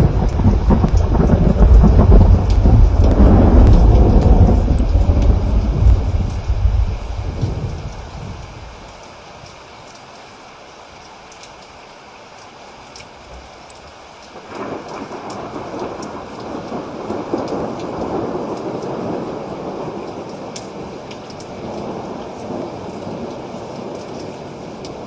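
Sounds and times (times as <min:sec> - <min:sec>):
thunder rumbling: 0:00.0 - 0:08.9
steady rain: 0:00.0 - 0:25.0.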